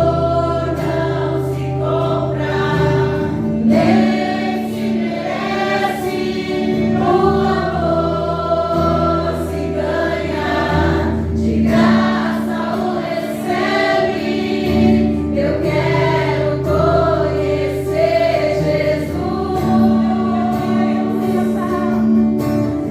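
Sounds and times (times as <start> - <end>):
group singing gospel in harmony: 0.0 - 22.9.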